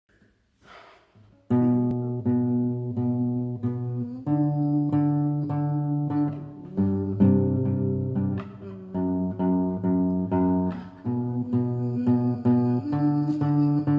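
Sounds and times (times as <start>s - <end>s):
guitar chords strummed: 1.5s - 13.9s.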